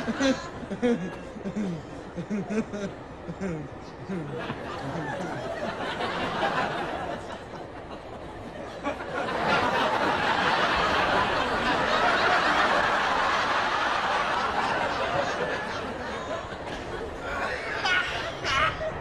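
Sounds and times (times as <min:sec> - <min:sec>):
studio audience laughing: 0:00.0 - 0:19.0.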